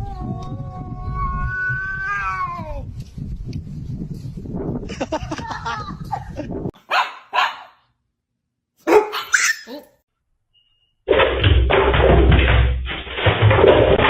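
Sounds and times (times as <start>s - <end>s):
dog barking: 6.8s - 7.8s, 8.8s - 9.9s.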